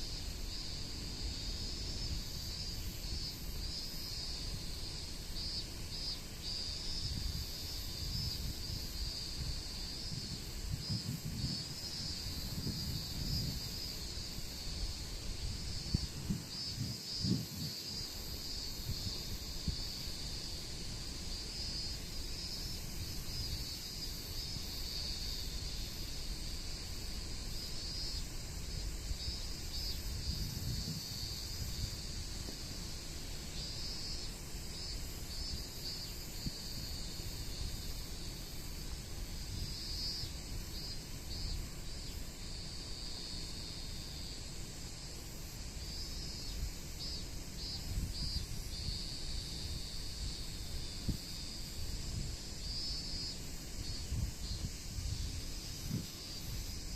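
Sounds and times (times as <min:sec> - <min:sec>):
insects chirring: 0:00.0 - 0:56.9
wind buffeting microphone: 0:06.8 - 0:18.0, 0:28.3 - 0:33.0, 0:53.7 - 0:56.9.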